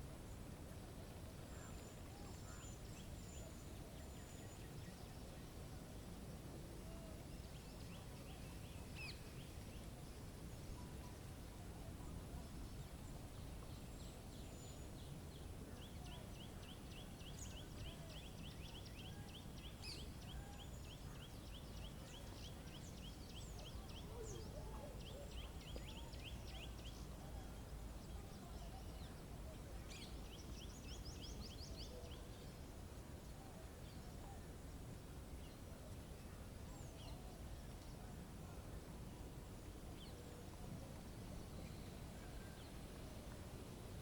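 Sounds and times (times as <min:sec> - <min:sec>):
songbirds trilling: 0:12.4 - 0:32.8.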